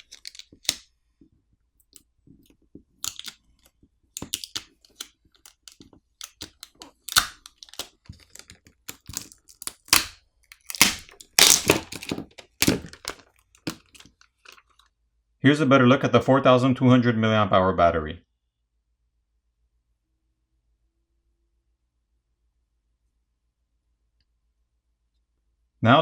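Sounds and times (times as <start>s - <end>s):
battery peeled off adhesive crackling: 0.0s - 0.9s, 1.8s - 14.6s.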